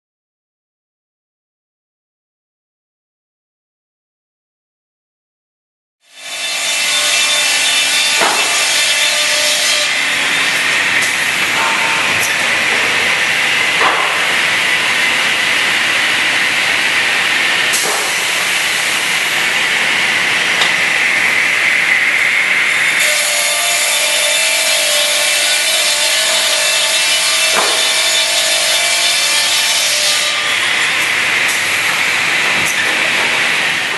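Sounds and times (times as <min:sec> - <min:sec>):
beam saw cutting panel board: 0:06.0 - 0:33.9.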